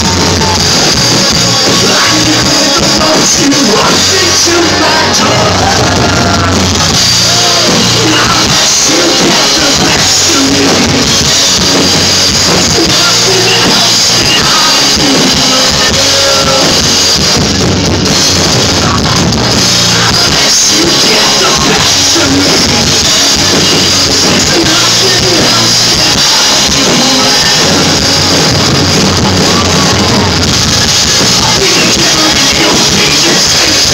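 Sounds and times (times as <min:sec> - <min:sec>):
faint vocals: 0:00.0 - 0:11.3, 0:18.6 - 0:33.9
drums: 0:00.0 - 0:33.9
live rock band playing: 0:00.0 - 0:33.9.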